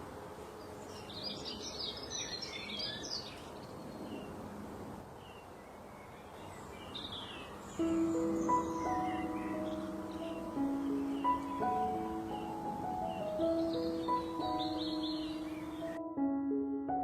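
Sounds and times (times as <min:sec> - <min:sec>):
steady background hiss: 0:00.0 - 0:17.0
small birds chirping: 0:00.4 - 0:16.1
music with sustained notes: 0:07.1 - 0:17.0.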